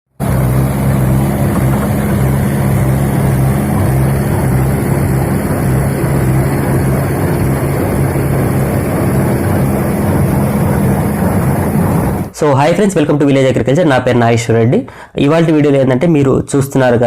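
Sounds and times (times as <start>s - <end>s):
tractor engine running: 0.1s - 12.3s.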